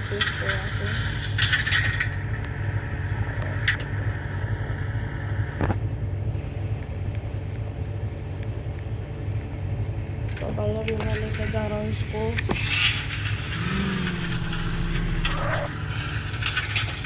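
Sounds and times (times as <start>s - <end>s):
vehicle engine humming: 0.0s - 17.0s.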